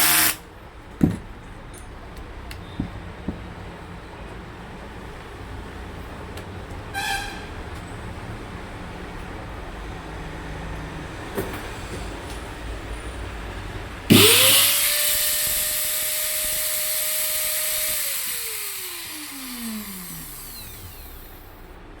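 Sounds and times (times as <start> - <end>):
angle grinder whining: 0.0 - 0.4, 14.1 - 21.7
angle grinder winding down: 0.0 - 0.4, 14.1 - 21.7.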